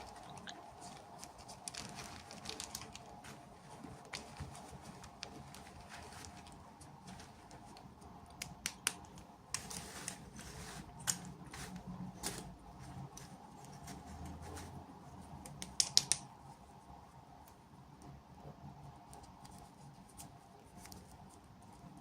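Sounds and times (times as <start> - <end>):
packaging rustle: 0.0 - 7.9
plastic packaging clicks and taps: 15.4 - 16.3.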